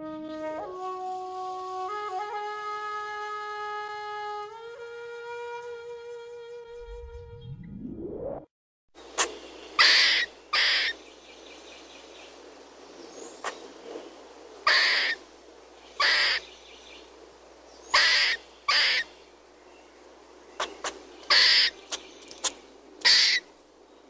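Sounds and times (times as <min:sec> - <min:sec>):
squirrel chirping: 0:09.1 - 0:12.2, 0:14.6 - 0:15.2, 0:15.9 - 0:17.0, 0:17.8 - 0:19.2, 0:20.5 - 0:23.5.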